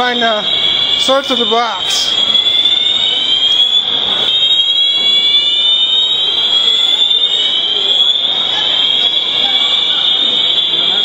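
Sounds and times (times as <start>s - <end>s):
fire alarm tone: 0.0s - 11.0s.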